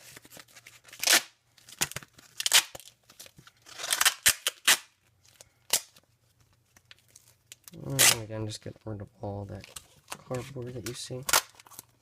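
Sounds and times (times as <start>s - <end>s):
duct tape tearing: 0.8s - 3.0s, 3.6s - 5.0s, 5.7s - 6.0s, 7.6s - 8.3s, 11.2s - 11.9s.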